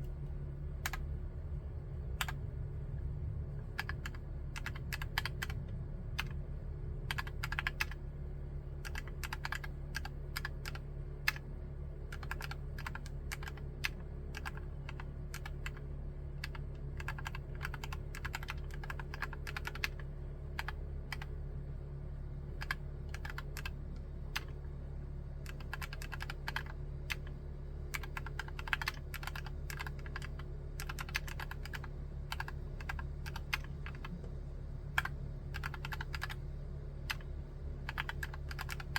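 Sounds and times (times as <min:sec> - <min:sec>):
low steady hum: 0:00.0 - 0:38.9
typing on mechanical keyboard: 0:03.8 - 0:05.6, 0:07.1 - 0:08.0, 0:08.8 - 0:11.4, 0:12.1 - 0:15.8, 0:16.4 - 0:21.3, 0:22.6 - 0:24.6, 0:25.4 - 0:27.3, 0:27.9 - 0:34.2, 0:35.0 - 0:36.4, 0:37.1 - 0:38.9.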